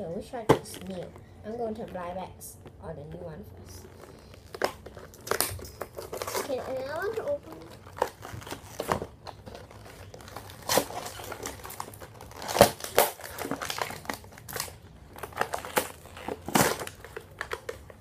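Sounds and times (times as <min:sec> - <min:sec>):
plastic packaging crinkling: 0:03.8 - 0:18.0.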